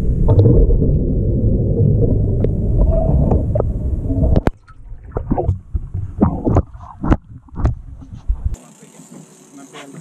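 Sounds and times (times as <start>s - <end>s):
loud low rumble: 0.0s - 4.4s.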